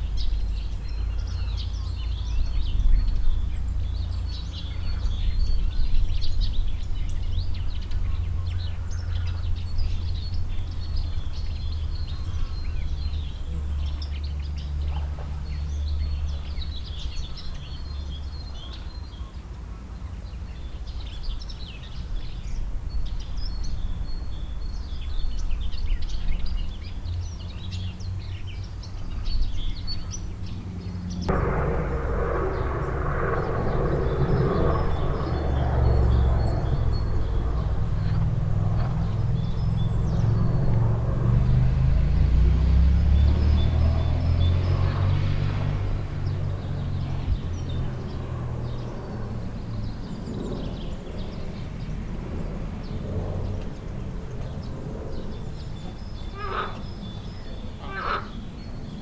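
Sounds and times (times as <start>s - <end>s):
birds chirping: 23.1s - 52.0s, 52.8s - 59.0s
low rumble: 31.1s - 56.2s
fuller noise: 31.3s - 43.9s.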